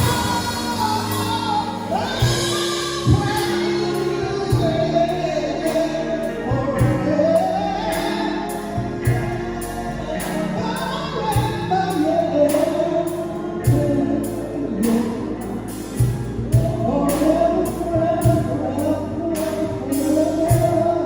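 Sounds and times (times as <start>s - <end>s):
gospel singing over a band: 0.0s - 21.0s
steady drum beat: 2.2s - 3.6s.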